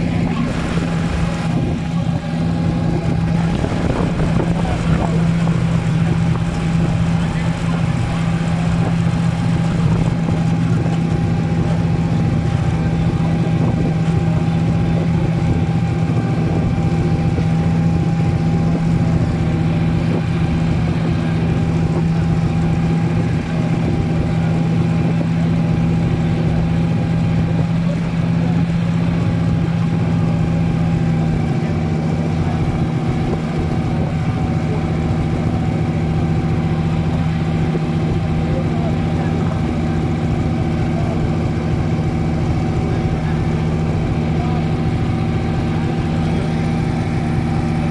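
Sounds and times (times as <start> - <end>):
vehicle engine running: 0.0 - 47.9.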